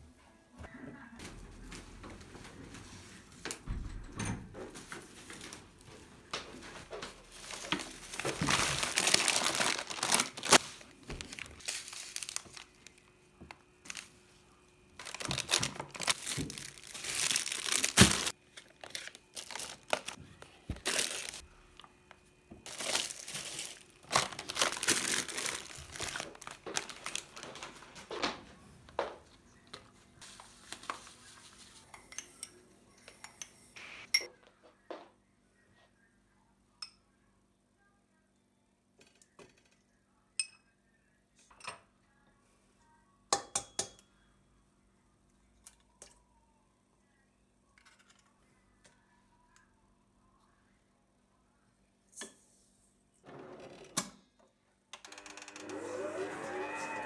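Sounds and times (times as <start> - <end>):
packaging crinkling and tearing: 7.4 - 13.1, 13.9 - 14.2, 15.0 - 21.9, 22.6 - 28.4.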